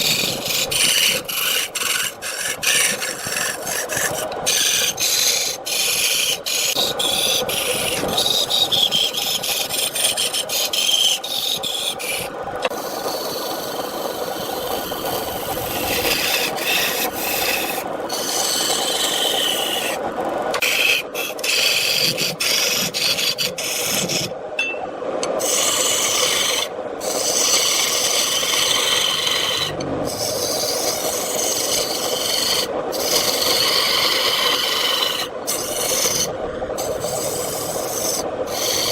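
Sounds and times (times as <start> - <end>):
lathe tool scraping wood: 0.0 - 24.4, 25.3 - 38.9.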